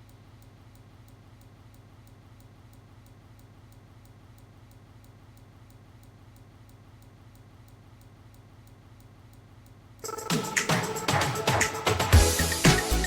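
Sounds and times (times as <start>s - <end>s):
light even ticks: 0.0s - 9.8s
faint electrical hum: 0.0s - 10.2s.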